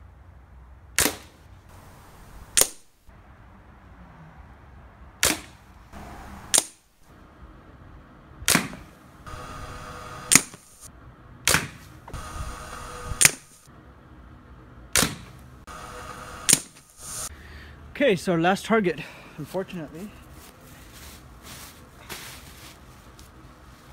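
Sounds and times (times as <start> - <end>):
air rifle shots cracking: 1.0 - 1.4, 2.4 - 3.0, 5.2 - 5.6, 6.4 - 6.9, 8.5 - 9.0, 10.2 - 10.9, 11.5 - 12.3, 13.1 - 13.7, 15.0 - 15.4, 16.4 - 17.0.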